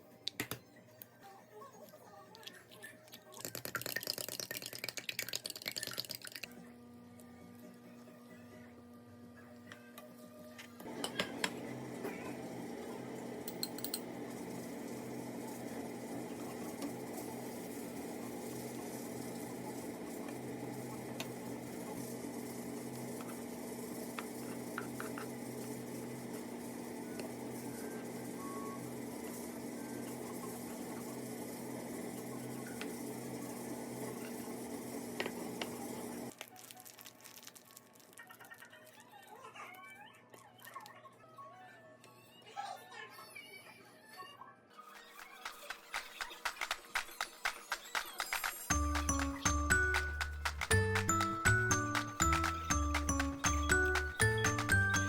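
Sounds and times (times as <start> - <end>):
utensils clinking against dishes: 13.4 - 14.1.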